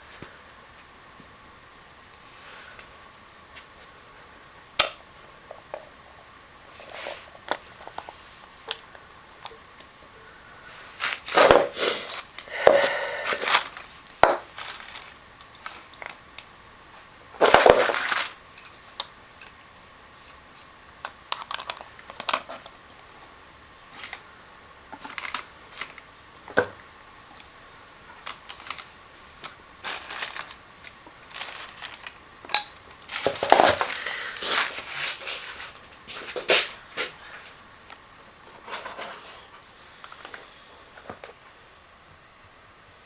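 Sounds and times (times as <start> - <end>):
rasping crinkling: 10.6 - 19.0, 24.9 - 37.6.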